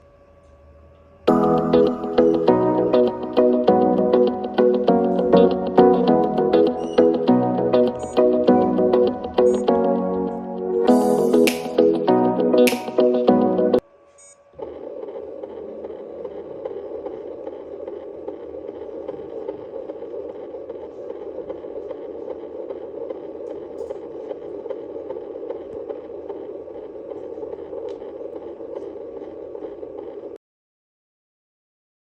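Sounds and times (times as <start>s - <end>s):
fetal heartbeat on doppler monitor: 1.3s - 10.5s, 14.5s - 30.4s.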